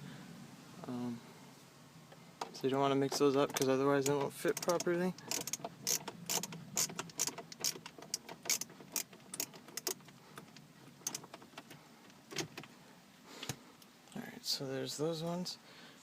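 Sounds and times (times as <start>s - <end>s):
screwdriver clicking on plastic: 3.5s - 10.0s.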